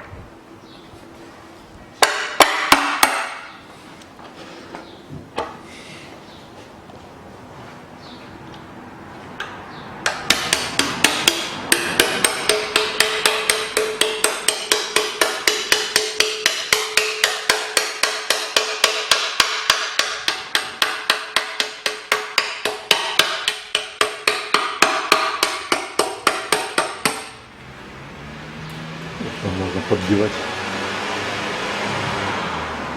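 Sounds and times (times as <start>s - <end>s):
hammer striking metal knife: 10.0s - 27.4s.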